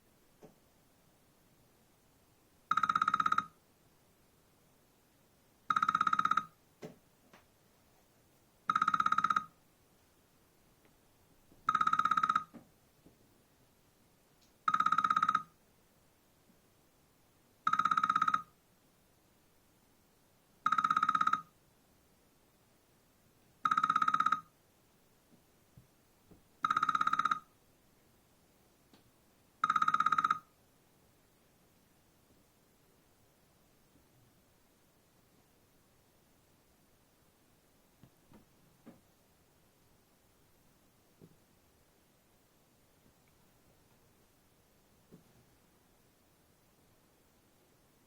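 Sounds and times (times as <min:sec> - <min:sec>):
old-style telephone ringtone: 0:02.7 - 0:03.5, 0:05.7 - 0:06.6, 0:08.7 - 0:09.5, 0:11.7 - 0:12.5, 0:14.7 - 0:15.5, 0:17.7 - 0:18.5, 0:20.6 - 0:21.5, 0:23.6 - 0:24.5, 0:26.6 - 0:27.5, 0:29.6 - 0:30.5.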